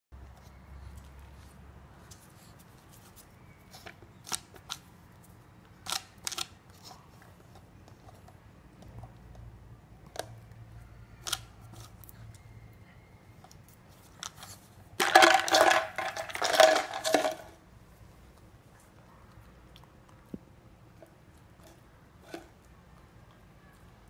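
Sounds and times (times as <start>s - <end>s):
kibble clicking in plastic bottle: 14.2s - 17.5s.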